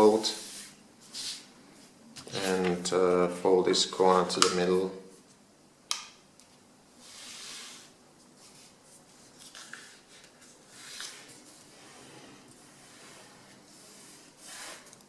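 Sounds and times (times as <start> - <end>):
paper rustling and folding: 8.4 - 15.0.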